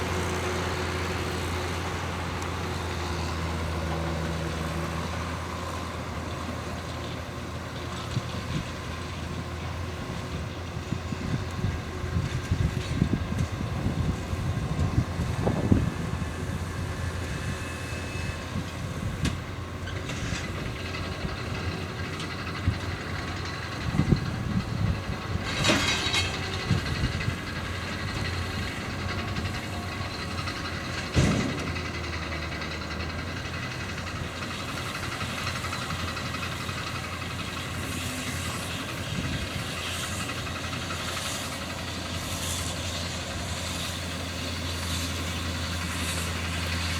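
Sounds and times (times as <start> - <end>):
tractor diesel engine running: 0.0 - 46.9
machinery clunks and knocks: 30.7 - 32.8.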